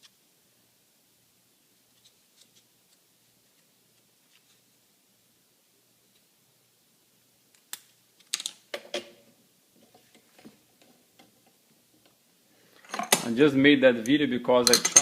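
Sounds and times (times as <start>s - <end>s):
metal parts tapping: 12.8s - 13.3s, 14.6s - 15.0s.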